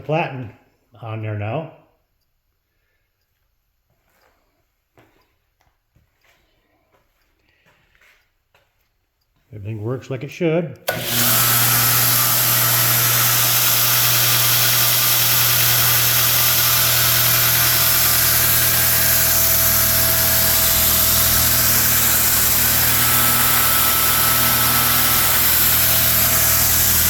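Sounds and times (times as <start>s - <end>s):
belt grinder running: 10.9s - 27.0s.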